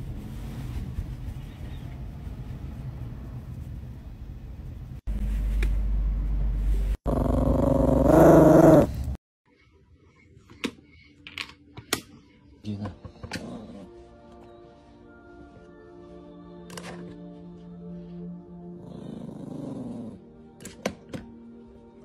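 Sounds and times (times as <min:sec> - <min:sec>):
dog growling: 0:07.1 - 0:09.1, 0:18.8 - 0:20.2.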